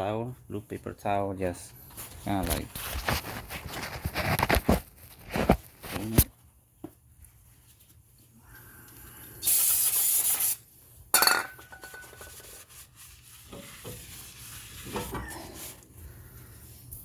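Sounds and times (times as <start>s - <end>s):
rubbing and handling sounds: 1.6s - 6.4s, 7.0s - 8.4s, 11.7s - 17.0s
aerosol spray hiss: 9.4s - 10.6s.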